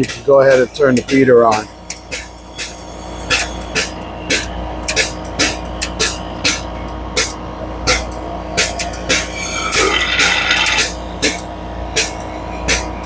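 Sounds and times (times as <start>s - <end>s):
frozen beverage machine humming: 9.4s - 11.1s.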